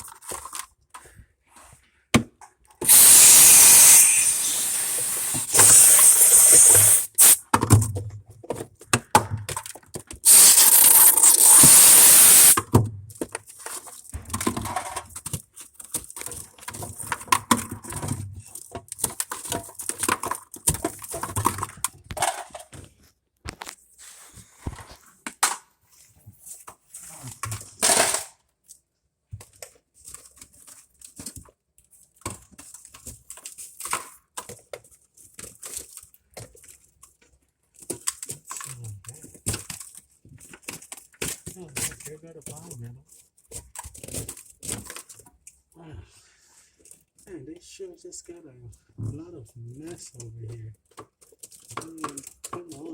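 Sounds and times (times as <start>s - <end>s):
hands handling plastic parts: 0.0s - 1.2s.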